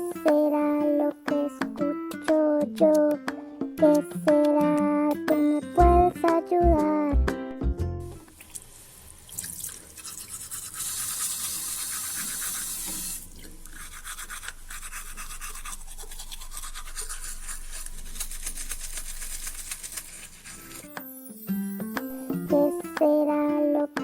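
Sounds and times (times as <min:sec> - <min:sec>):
scratchy scrubbing strokes: 0:10.0 - 0:20.9.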